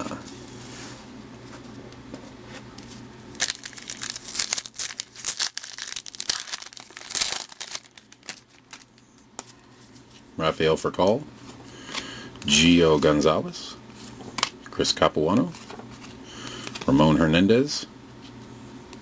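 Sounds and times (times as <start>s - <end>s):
plastic wrapper tearing and crinkling: 3.3s - 9.0s.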